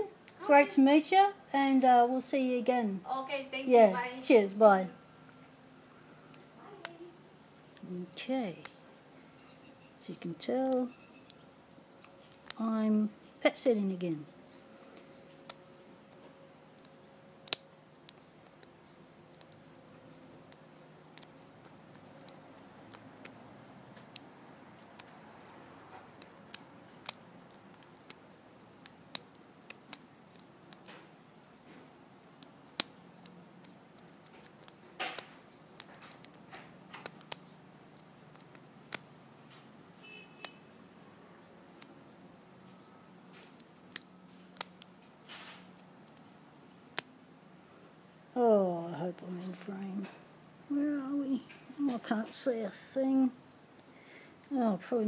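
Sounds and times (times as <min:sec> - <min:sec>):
lock pick clicking in padlock: 0:32.4 - 0:39.1.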